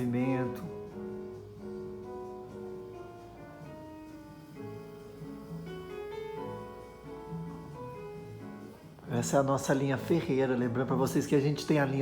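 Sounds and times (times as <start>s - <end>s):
guitar playing slow held notes: 0.0s - 9.2s.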